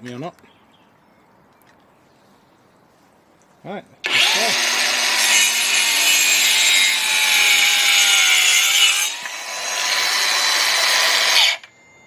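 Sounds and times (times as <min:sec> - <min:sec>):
circular saw cutting wood: 0:04.0 - 0:11.7.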